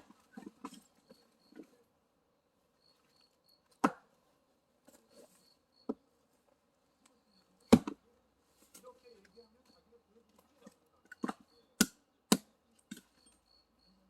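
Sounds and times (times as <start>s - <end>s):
axe splitting firewood: 7.7s - 8.0s, 11.0s - 13.3s.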